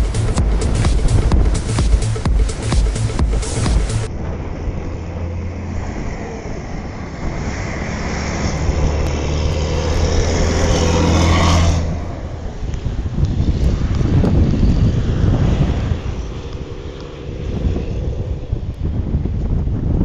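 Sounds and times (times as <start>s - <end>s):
diesel truck engine running: 0.0s - 13.2s.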